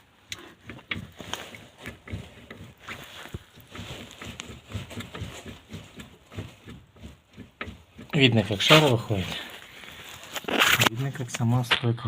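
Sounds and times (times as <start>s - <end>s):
car suspension knocking: 0.3s - 9.7s.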